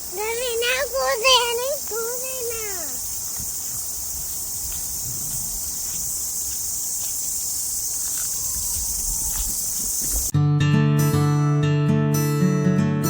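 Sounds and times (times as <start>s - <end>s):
insects chirping: 0.0s - 10.3s
strummed acoustic guitar: 10.3s - 13.0s.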